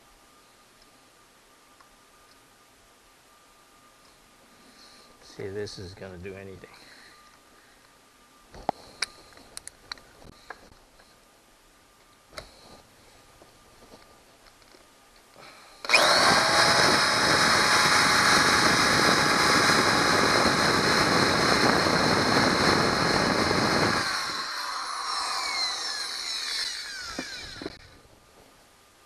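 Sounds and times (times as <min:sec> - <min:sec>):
power drill drilling metal: 0:15.8 - 0:27.9.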